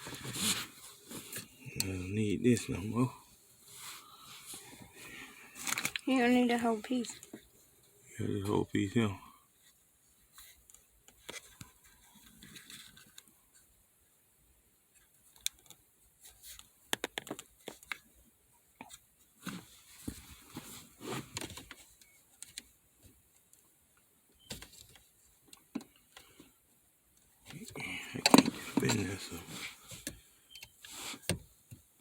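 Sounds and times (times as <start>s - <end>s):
rustling: 0.0s - 1.8s, 9.5s - 13.8s, 18.8s - 32.0s.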